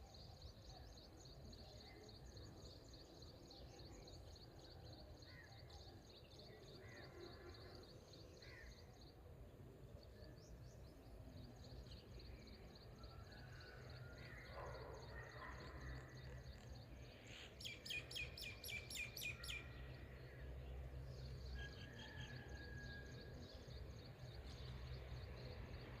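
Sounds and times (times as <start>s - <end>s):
bird chirps: 10.0s - 20.0s.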